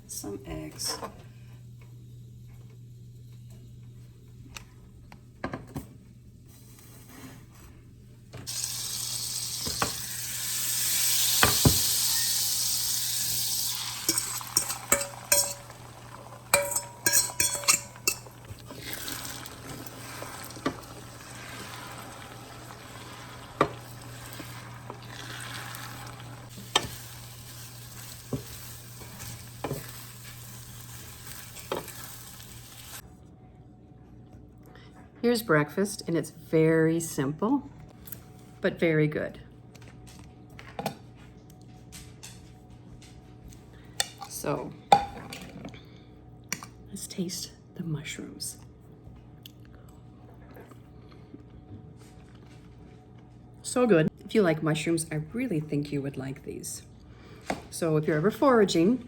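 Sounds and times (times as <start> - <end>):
eggs sizzling in a frying pan: 8.5 - 33.0
utensil scraping a pan: 14.0 - 27.0.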